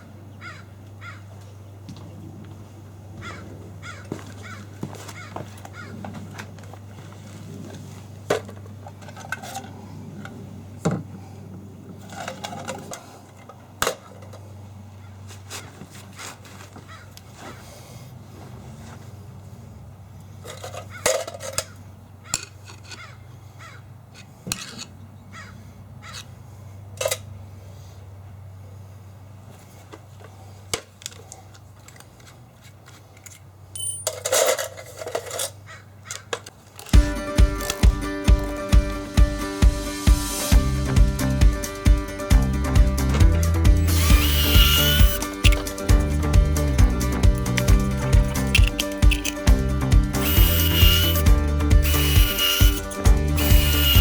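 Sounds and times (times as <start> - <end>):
crow cawing: 0.4 - 1.2, 3.2 - 5.9, 23.0 - 23.8, 25.4 - 26.2
small hard objects clicking: 43.8 - 46.2, 47.3 - 49.5.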